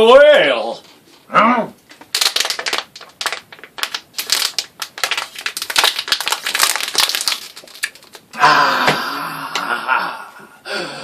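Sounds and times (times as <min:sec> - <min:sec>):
drink container crinkling: 0:01.9 - 0:08.4
man gasping breath: 0:08.4 - 0:11.0.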